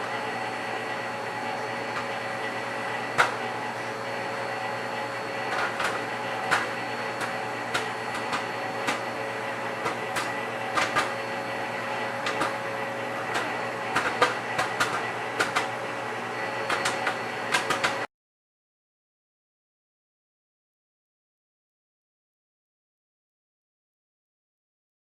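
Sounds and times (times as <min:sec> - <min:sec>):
microwave oven humming: 0:00.0 - 0:18.1
popcorn popping: 0:01.9 - 0:03.5, 0:05.4 - 0:15.9, 0:16.5 - 0:18.1.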